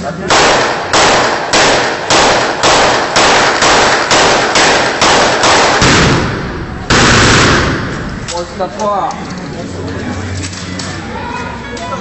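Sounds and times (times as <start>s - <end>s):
shotgun shots: 0.3s - 8.3s.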